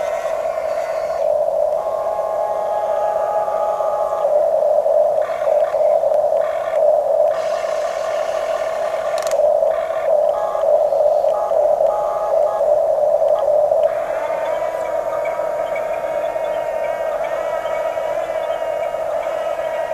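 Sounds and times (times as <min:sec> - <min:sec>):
electric hum: 0:00.0 - 0:19.9
toy electric motors whining: 0:07.4 - 0:09.5.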